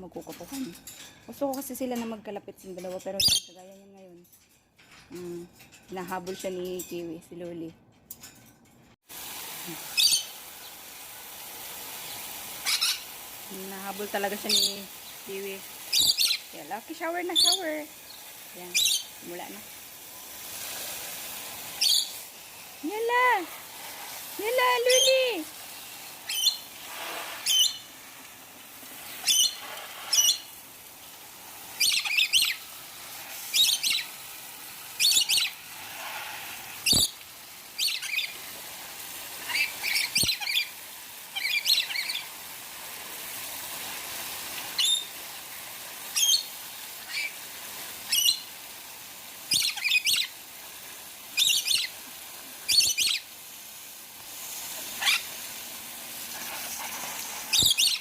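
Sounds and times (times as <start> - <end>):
lorikeets screeching: 10.0 - 10.3, 12.6 - 13.1, 15.9 - 16.5, 17.2 - 17.7, 21.8 - 22.2, 26.3 - 26.7, 27.4 - 27.9, 41.4 - 42.2, 55.0 - 55.3, 57.5 - 58.0.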